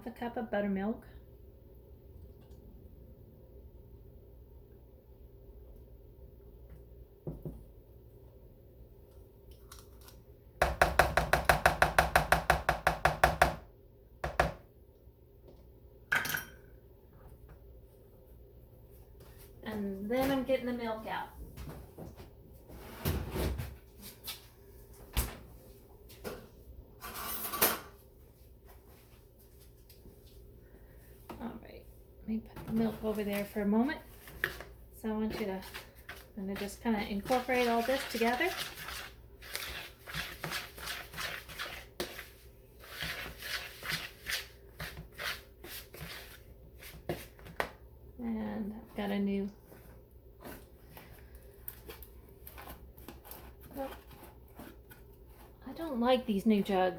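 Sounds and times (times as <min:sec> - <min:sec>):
batter stirred in bowl: 0:32.5 - 0:56.9.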